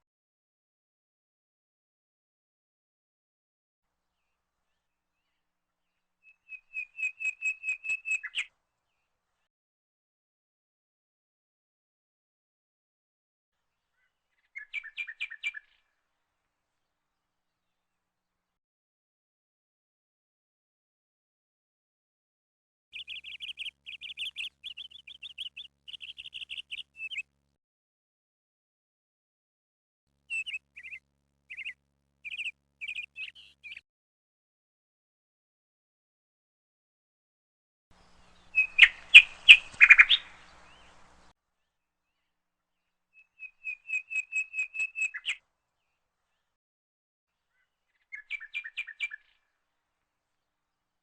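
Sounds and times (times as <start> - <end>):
small bird chirping: 4.7 - 8.5, 13.9 - 15.9, 23.0 - 27.3, 30.3 - 33.8, 38.0 - 46.6, 47.5 - 49.6.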